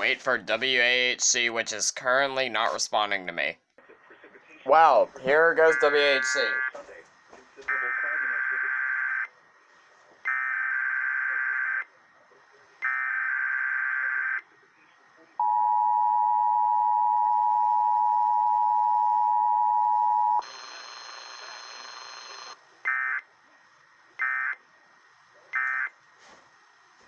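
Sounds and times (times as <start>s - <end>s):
radio hiss: 3.8s - 10.3s, 11.3s - 12.9s, 14.4s - 15.4s, 20.4s - 27.0s
warbling data bursts: 4.7s - 6.7s.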